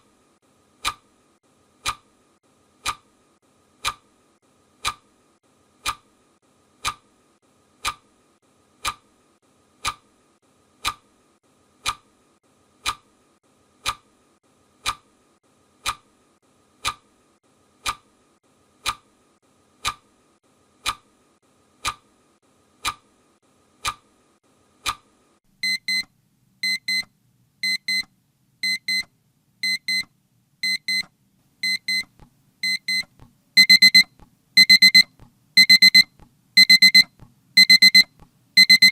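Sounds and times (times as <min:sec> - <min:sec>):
clock ticking: 0:25.6 - 0:38.9
alarm clock beeping: 0:31.6 - 0:38.9.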